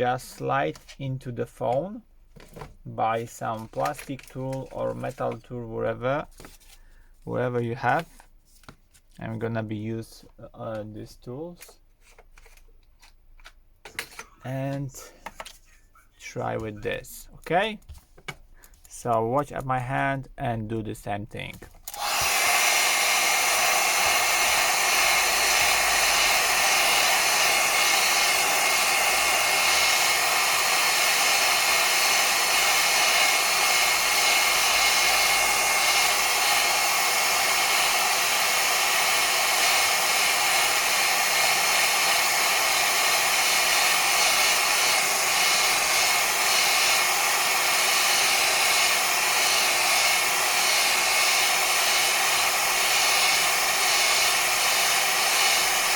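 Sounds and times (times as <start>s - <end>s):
hot-air blower running: 21.9s - 55.9s.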